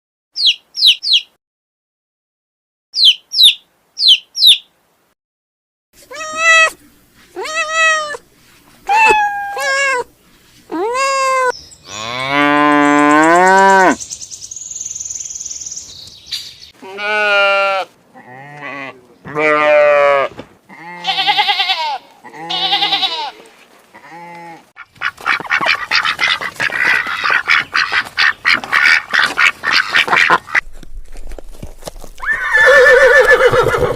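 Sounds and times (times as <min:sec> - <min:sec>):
bird chirps: 0:00.4 - 0:01.3, 0:03.0 - 0:04.7, 0:12.8 - 0:16.8
farm animal calls: 0:06.1 - 0:08.2, 0:10.7 - 0:14.0, 0:16.8 - 0:30.6, 0:32.2 - 0:33.9
cow mooing: 0:11.9 - 0:14.0.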